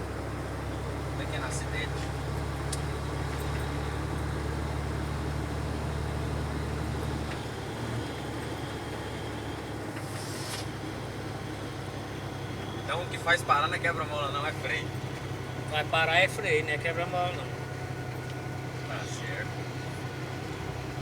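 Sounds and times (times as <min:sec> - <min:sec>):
truck engine droning: 0:00.0 - 0:21.0
short hiss: 0:10.0 - 0:10.8.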